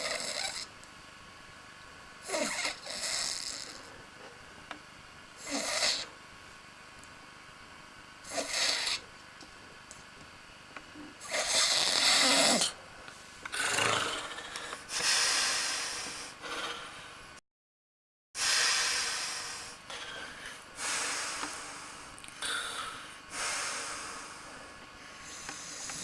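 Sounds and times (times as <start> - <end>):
man snoring heavily: 0.0 - 0.7, 2.2 - 3.9, 5.4 - 6.1, 8.3 - 9.0, 11.2 - 12.8, 13.5 - 17.0.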